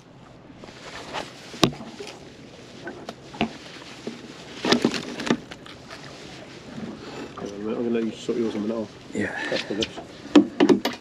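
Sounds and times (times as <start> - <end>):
knocks and clicks on boat: 1.6 - 2.2, 2.8 - 6.0, 9.6 - 11.0
hiss of sea and wind: 5.8 - 10.9.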